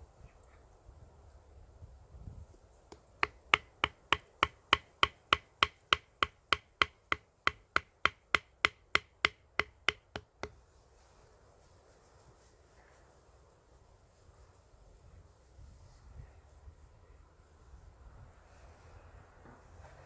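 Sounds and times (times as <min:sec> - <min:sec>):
sharp ringing knocks: 0:03.2 - 0:10.2.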